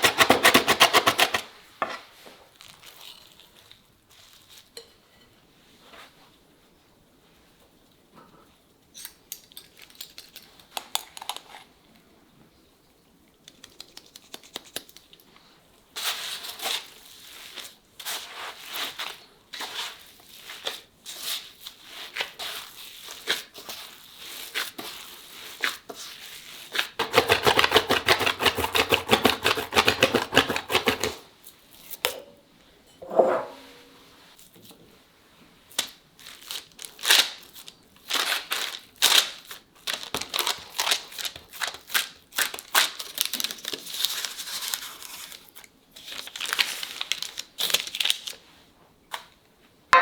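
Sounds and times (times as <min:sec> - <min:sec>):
baking paper crinkling and tearing: 0:02.5 - 0:04.6, 0:16.0 - 0:31.2, 0:35.7 - 0:48.5.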